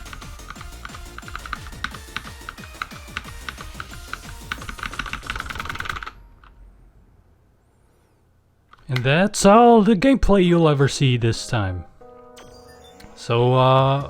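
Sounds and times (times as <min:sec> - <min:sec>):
fast electronic music: 0:00.0 - 0:06.0.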